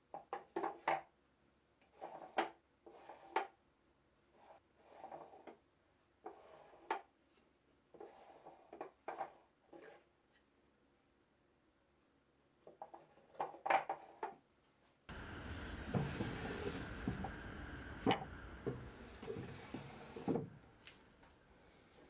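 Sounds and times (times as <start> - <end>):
wooden drawer sliding: 15.1 - 21.2.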